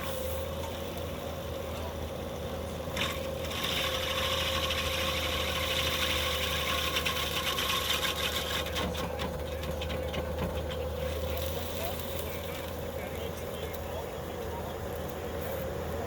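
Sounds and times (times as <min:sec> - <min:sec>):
machine running steadily: 0:00.0 - 0:16.0
stump grinder cutting wood: 0:02.8 - 0:13.4.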